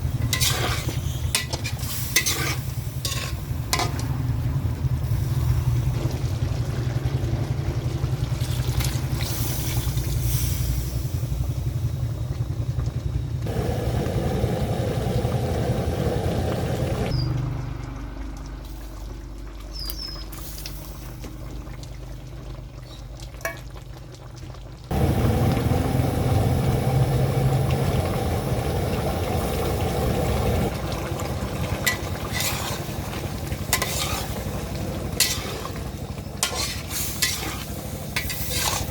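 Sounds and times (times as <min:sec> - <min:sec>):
food frying in a pan: 0:00.0 - 0:38.9
low hum: 0:10.0 - 0:18.1, 0:24.9 - 0:36.5.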